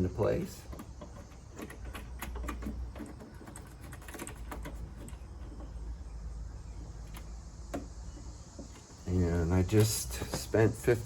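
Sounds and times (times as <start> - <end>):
small parts clicking and tapping: 0.6 - 5.8.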